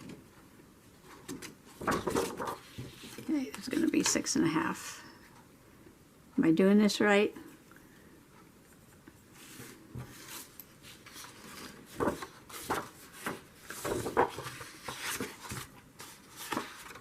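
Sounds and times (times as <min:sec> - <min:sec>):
paper rustling: 0:01.0 - 0:04.2, 0:09.4 - 0:17.0.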